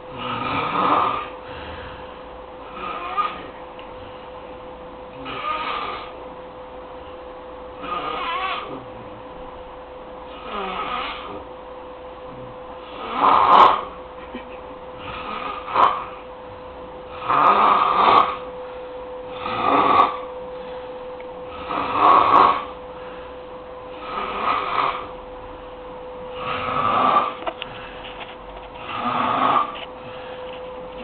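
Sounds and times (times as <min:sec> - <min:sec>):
faint steady hum: 0:00.0 - 0:31.0
person snoring: 0:00.1 - 0:03.6, 0:05.1 - 0:06.2, 0:07.8 - 0:09.2, 0:10.3 - 0:11.5, 0:12.3 - 0:14.0, 0:15.0 - 0:16.2, 0:17.1 - 0:18.5, 0:19.3 - 0:20.3, 0:21.5 - 0:22.8, 0:23.9 - 0:25.2, 0:26.3 - 0:27.9, 0:28.8 - 0:30.4.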